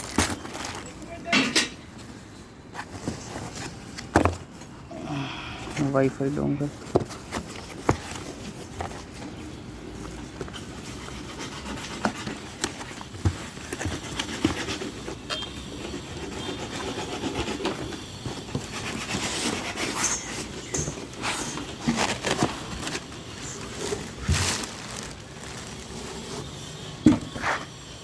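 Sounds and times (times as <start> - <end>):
packaging rustling: 0.0 - 1.4, 11.7 - 26.8.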